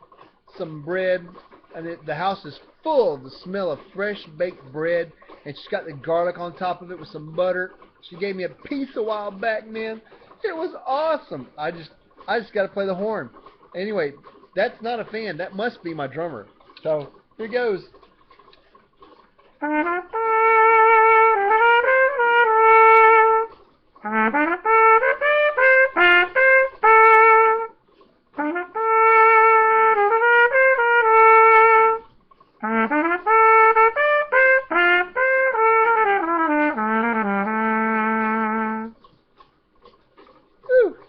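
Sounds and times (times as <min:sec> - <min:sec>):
brass horn melody: 0:19.6 - 0:39.1.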